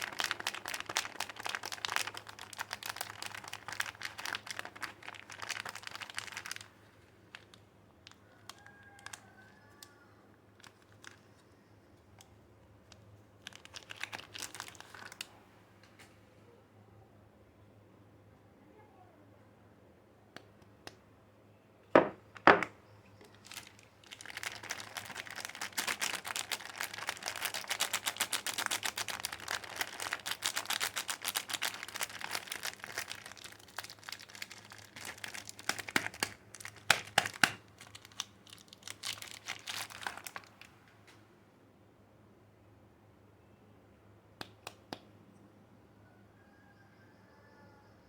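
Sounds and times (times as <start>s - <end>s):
wrapper tearing: 0.0s - 8.2s, 10.6s - 11.4s, 13.4s - 15.3s, 23.3s - 40.7s
wrapper crinkling and rustling: 0.0s - 9.2s, 10.6s - 11.5s, 12.8s - 15.4s, 23.3s - 40.9s.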